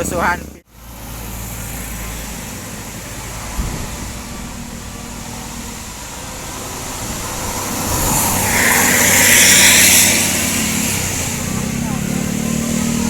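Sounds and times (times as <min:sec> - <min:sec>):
road noise: 0:00.0 - 0:13.0
vehicle engine running: 0:00.0 - 0:13.0
hiss: 0:03.5 - 0:11.6.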